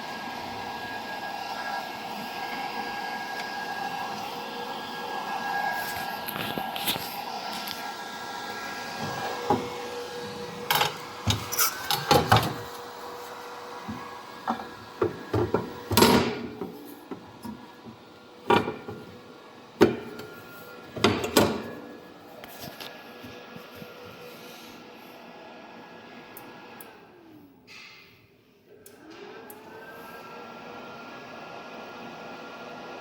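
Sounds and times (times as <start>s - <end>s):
steady machine hum: 0.0s - 27.2s
hard parts knocking and clattering: 9.0s - 12.8s, 13.9s - 19.2s, 19.8s - 20.3s, 20.9s - 21.8s.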